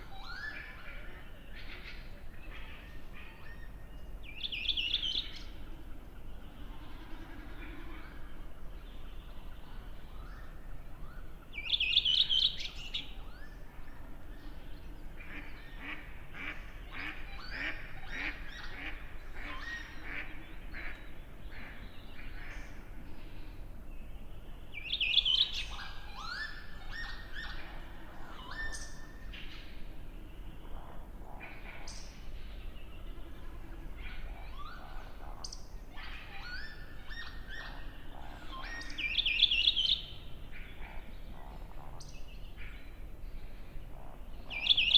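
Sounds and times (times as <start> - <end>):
dawn chorus of birds: 0.0 - 44.9
duck calls: 15.3 - 20.3.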